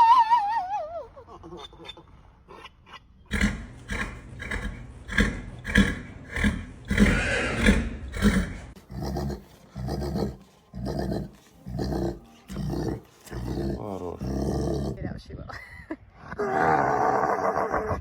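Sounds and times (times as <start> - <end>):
horse grunting: 3.3 - 15.0.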